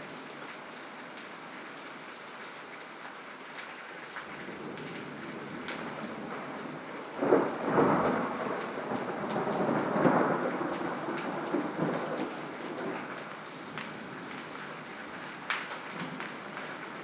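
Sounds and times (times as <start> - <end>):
steady rain: 0.0 - 17.0
thunder clap rumbling: 4.4 - 15.3.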